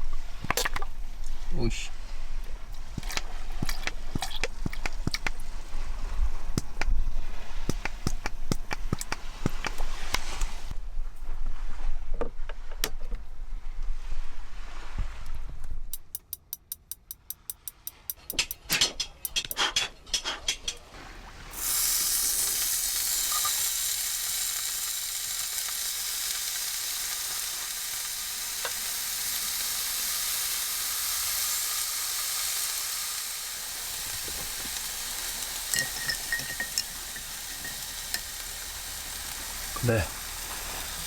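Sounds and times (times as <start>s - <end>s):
food sizzling in a hot pan: 2.7s - 10.7s, 21.5s - 41.0s
sharp clicks: 7.7s - 10.2s.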